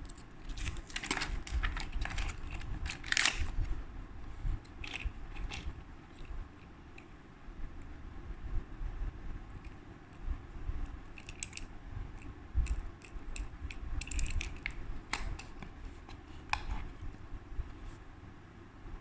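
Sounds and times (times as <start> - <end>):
packaging clicks and scrapes: 0.0 - 3.7, 4.7 - 6.3
steady low rumble: 0.0 - 19.0.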